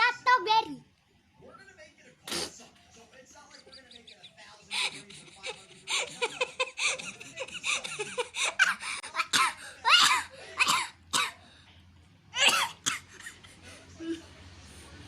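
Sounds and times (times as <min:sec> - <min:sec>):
high-pitched voice coughing: 0:08.6 - 0:11.4, 0:12.4 - 0:13.4.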